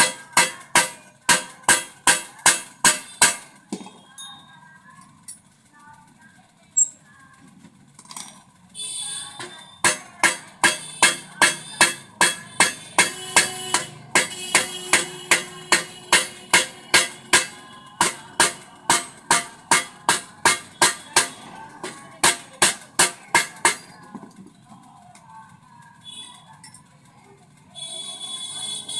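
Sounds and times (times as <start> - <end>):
hammer striking metal: 0.0 - 3.9, 9.2 - 24.0.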